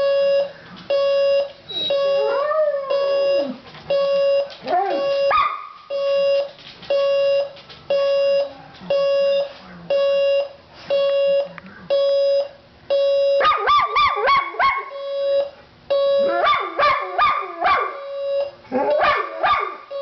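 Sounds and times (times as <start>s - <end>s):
alarm clock beeping: 0.0s - 13.6s, 15.0s - 16.7s, 17.9s - 18.6s
dog howling: 1.7s - 3.6s.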